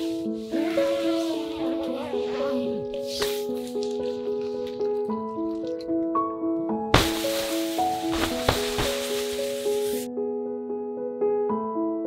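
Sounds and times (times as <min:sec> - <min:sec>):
gentle piano melody: 0:00.0 - 0:12.0
steady hiss: 0:07.0 - 0:10.1.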